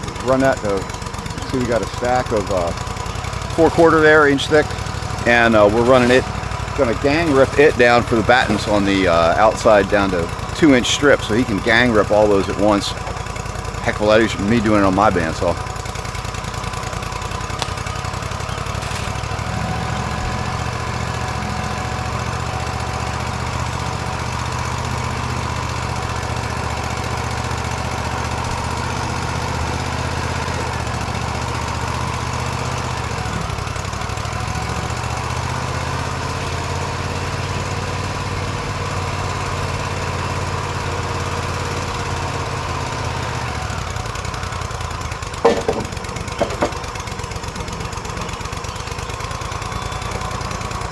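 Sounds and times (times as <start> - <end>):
bandsaw sawmill engine running: 0.0 - 50.9
saw blade cutting boards: 16.8 - 38.5, 45.4 - 48.9.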